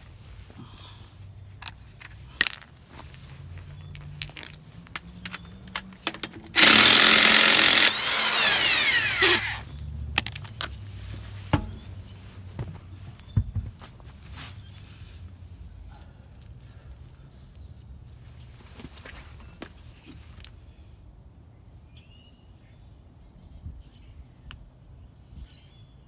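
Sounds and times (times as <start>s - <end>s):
power tool running: 6.5s - 9.8s.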